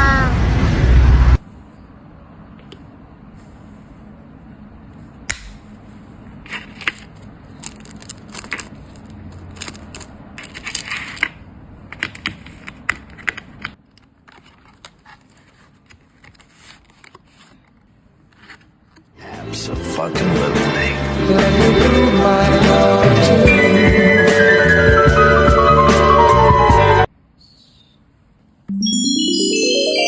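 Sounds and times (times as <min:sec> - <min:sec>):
packaging clicking and crinkling: 0:06.5 - 0:11.4.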